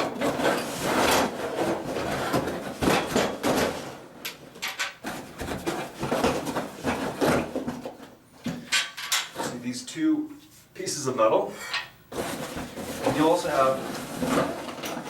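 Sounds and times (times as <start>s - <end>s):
metal rails scraping cardboard: 0.0s - 3.9s, 11.5s - 15.0s.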